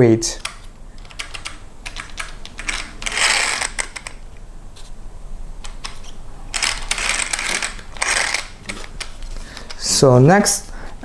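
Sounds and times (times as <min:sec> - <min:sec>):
small plastic parts clicking: 0:00.4 - 0:04.2, 0:05.6 - 0:09.9
scraping bursts: 0:02.6 - 0:04.1, 0:06.0 - 0:09.4.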